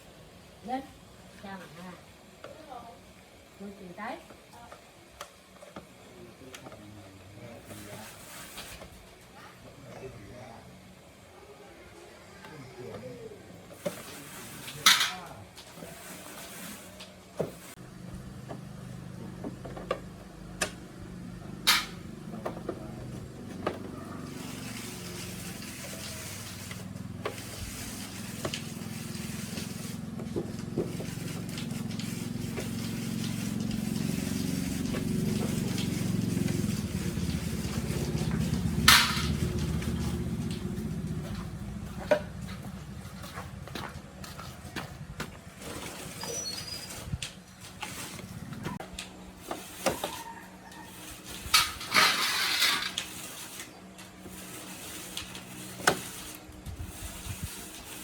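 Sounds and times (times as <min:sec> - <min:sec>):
motorbike engine humming: 0:17.8 - 0:45.6, 0:48.0 - 0:48.8.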